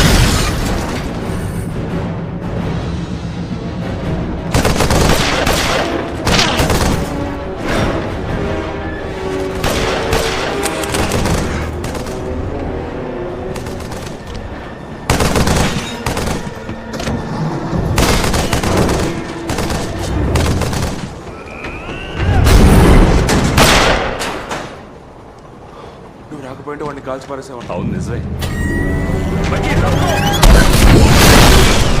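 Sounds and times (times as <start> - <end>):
orchestral score: 0.0 - 26.3
gunfire: 4.5 - 7.2.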